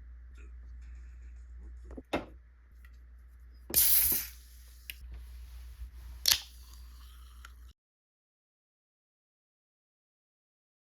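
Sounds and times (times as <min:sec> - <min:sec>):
short loud hiss: 0:03.7 - 0:04.5.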